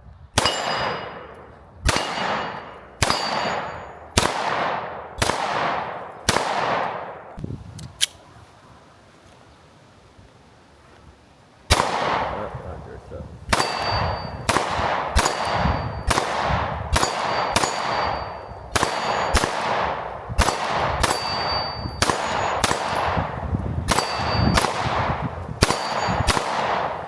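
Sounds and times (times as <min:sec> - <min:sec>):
bullets ringing on steel: 0:00.4 - 0:07.0, 0:13.5 - 0:27.0
pistol shots: 0:00.4 - 0:07.4, 0:11.7 - 0:12.5, 0:13.5 - 0:27.0.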